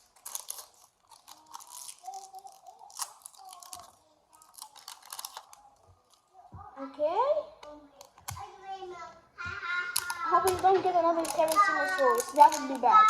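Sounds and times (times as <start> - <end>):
plastic packaging crinkling: 0.0 - 6.5, 9.9 - 13.0.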